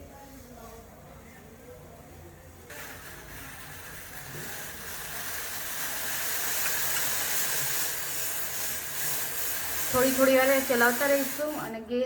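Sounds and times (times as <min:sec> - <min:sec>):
water heating with steady hiss: 0:02.6 - 0:12.0.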